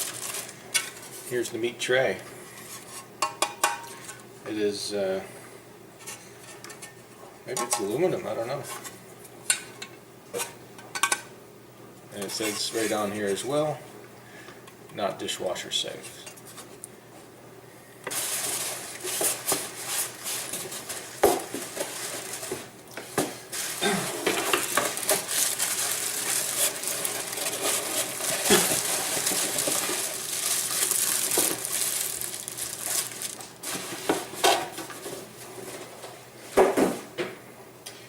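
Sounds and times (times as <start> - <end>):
packaging rustling: 0.0 - 1.1, 18.1 - 22.7, 23.5 - 35.1.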